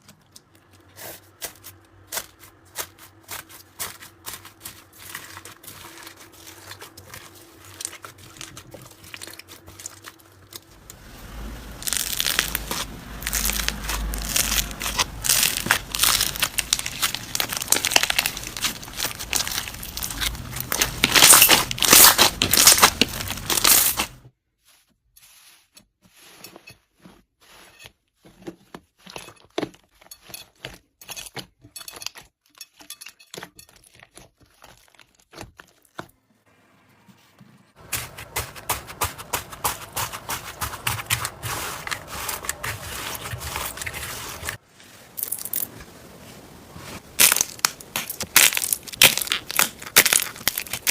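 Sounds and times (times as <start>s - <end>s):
slime crackling and crunching: 1.0s - 24.2s, 33.5s - 36.1s, 37.8s - 44.6s, 46.9s - 50.9s.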